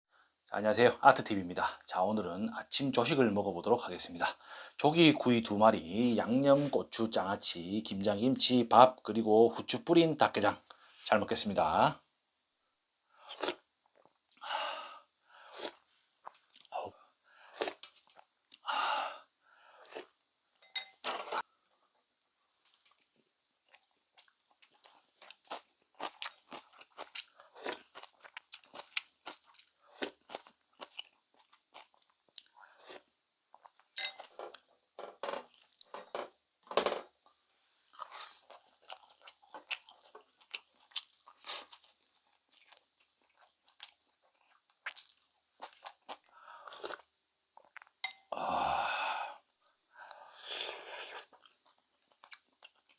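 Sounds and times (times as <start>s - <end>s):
person chewing and crunching food: 13.2s - 14.5s, 15.4s - 18.7s, 19.8s - 20.2s, 22.7s - 34.7s, 37.2s - 48.6s, 50.1s - 52.9s.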